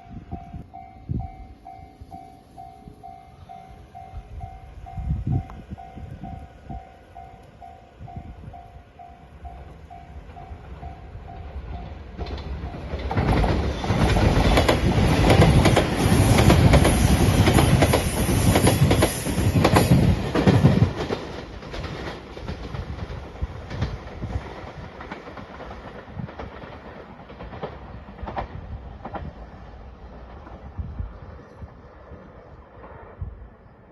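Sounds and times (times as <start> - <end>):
high whine of train: 0.0 - 33.9
train wheels clacking on rail joints: 5.3 - 31.0.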